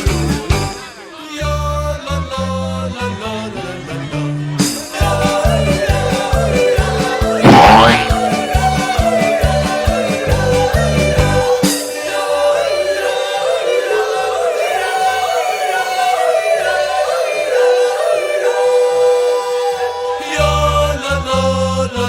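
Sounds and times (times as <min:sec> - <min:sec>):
music with singing: 0:00.9 - 0:22.0
heavy bass beat: 0:07.4 - 0:08.2.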